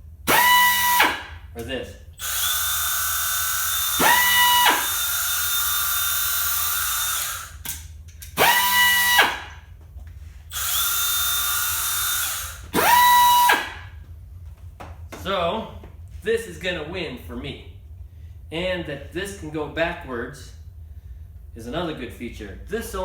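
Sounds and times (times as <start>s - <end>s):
motor spinning up: 0.3s - 1.3s, 2.2s - 7.6s, 8.4s - 9.6s, 10.5s - 13.9s
belt sander whining: 0.3s - 1.4s, 2.2s - 7.6s, 8.3s - 9.6s, 10.4s - 14.0s.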